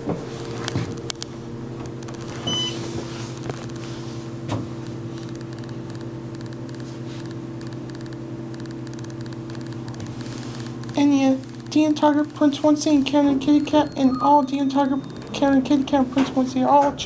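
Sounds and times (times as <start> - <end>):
elevator humming: 0.0 - 17.0
short high beep: 13.5 - 15.8.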